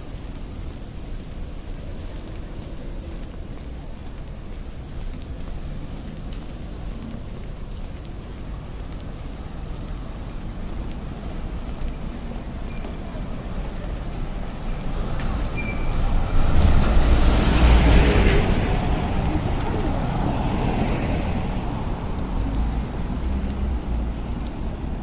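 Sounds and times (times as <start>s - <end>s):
city street traffic: 0.0s - 25.0s
vehicle passing close: 15.1s - 25.0s.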